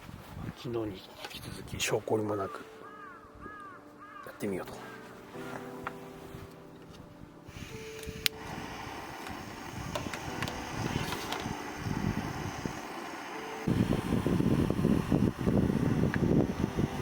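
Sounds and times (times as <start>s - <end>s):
wind buffeting microphone: 0.0s - 1.9s, 7.1s - 17.0s.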